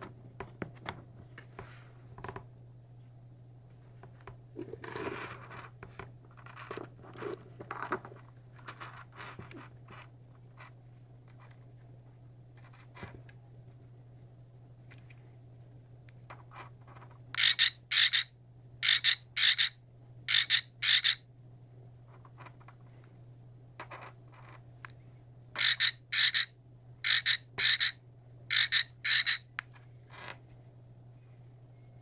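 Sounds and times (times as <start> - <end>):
electronic frog croaks: 17.4 - 21.2, 25.6 - 29.5.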